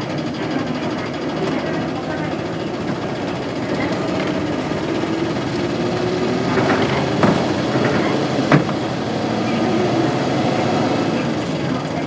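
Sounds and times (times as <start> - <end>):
diesel engine running: 0.0 - 12.0
sharp knocks: 2.8 - 8.9.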